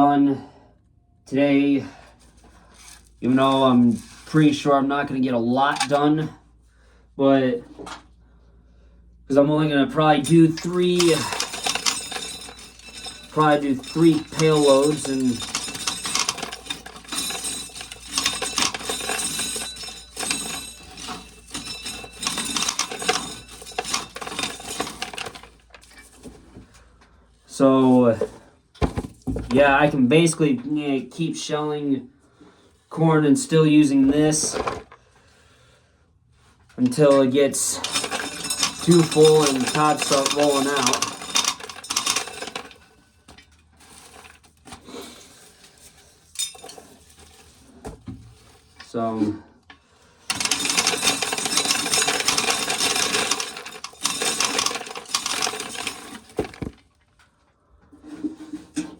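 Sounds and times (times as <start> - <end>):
corn kernels clattering into bucket: 5.6 - 6.0, 10.0 - 26.3, 37.0 - 42.9, 50.3 - 56.8.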